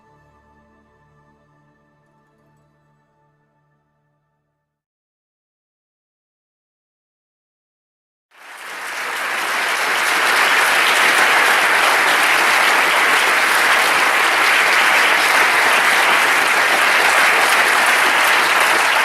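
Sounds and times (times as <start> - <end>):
large audience clapping: 8.3 - 19.0.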